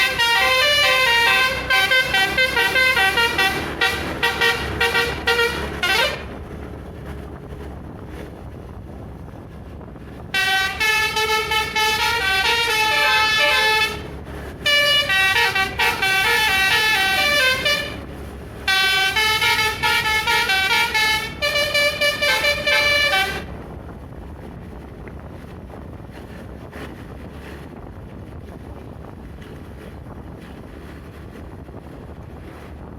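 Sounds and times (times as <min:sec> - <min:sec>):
bus musical horn playing a tune: 0:00.0 - 0:06.6, 0:10.3 - 0:23.6
wind noise: 0:00.0 - 0:32.9.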